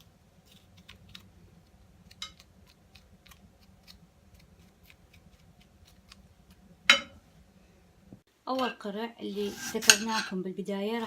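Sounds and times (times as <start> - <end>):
knife scraping pumpkin: 9.4 - 10.4.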